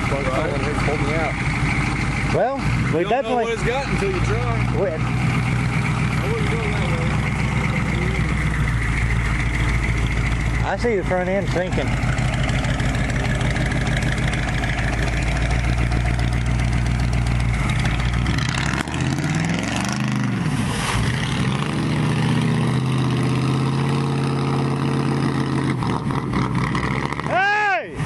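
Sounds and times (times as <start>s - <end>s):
truck engine revving: 0.0s - 28.0s.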